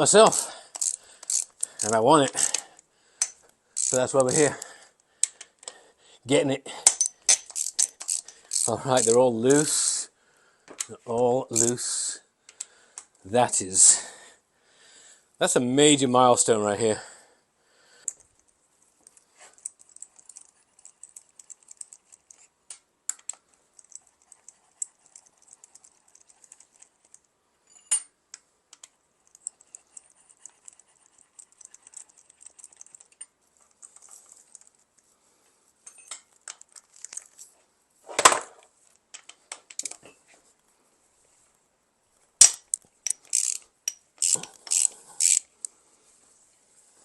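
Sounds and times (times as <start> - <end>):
metallic clinks of hand tools: 6.8 - 9.7.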